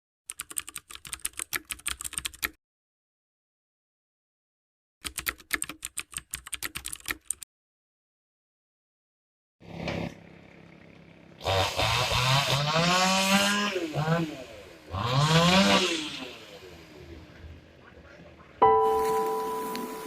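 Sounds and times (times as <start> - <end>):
computer keyboard typing clicks: 0.3 - 2.6, 5.0 - 7.4.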